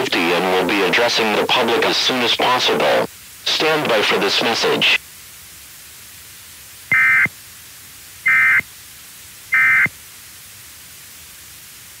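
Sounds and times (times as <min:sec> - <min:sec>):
static hiss: 0:00.0 - 0:12.0
buzzy data bursts: 0:06.9 - 0:07.3, 0:08.2 - 0:08.6, 0:09.5 - 0:09.9.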